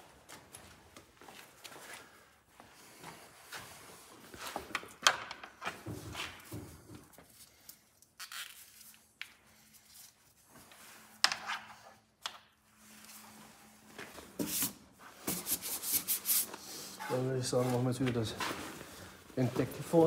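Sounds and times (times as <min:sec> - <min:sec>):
rustling and handling noises: 0:05.6 - 0:20.0.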